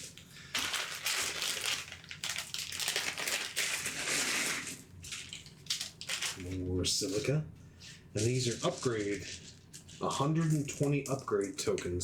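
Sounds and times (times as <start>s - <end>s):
plastic bags crinkling: 0.0s - 7.4s.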